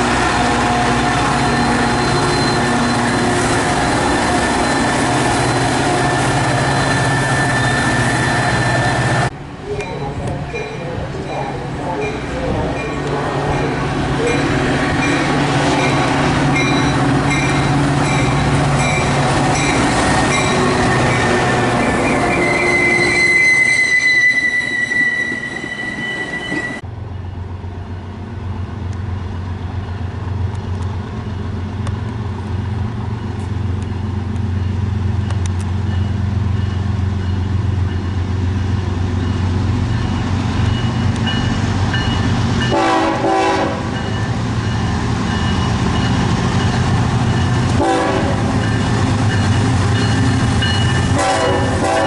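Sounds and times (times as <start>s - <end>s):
train wheels on rails: 0.0s - 52.0s
wheels squealing: 1.1s - 9.3s, 16.6s - 26.8s.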